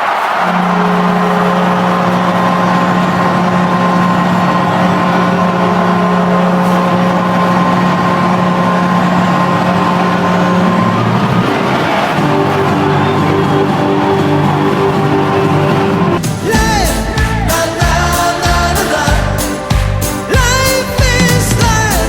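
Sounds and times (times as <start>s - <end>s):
arena goal horn blast: 0.0s - 22.0s
crowd cheering: 0.0s - 22.0s.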